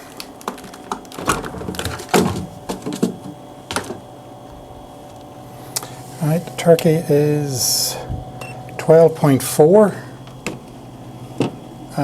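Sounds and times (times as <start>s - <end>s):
fridge clicks and knocks: 0.0s - 4.1s
steady low hum: 0.0s - 12.0s.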